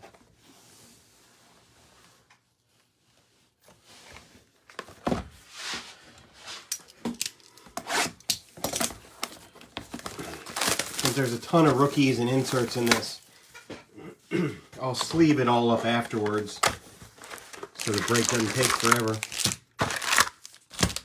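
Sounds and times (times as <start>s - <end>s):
cardboard and plastic being torn open: 7.9s - 13.3s, 15.8s - 21.0s.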